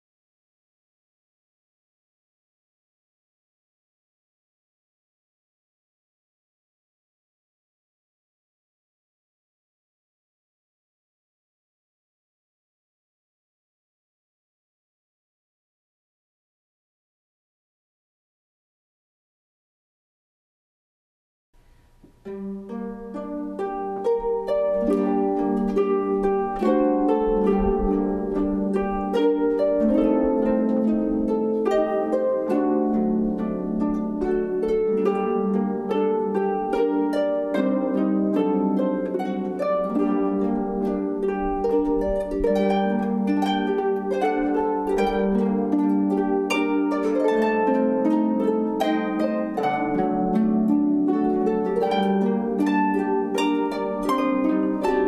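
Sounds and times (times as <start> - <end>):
plucked string instrument music: 21.6 - 55.0.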